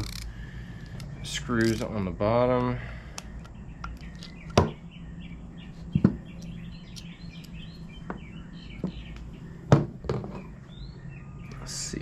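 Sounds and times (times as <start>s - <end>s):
hand tools clicking: 0.0s - 2.0s
small birds chirping: 0.0s - 12.0s
steady low hum: 0.0s - 12.0s.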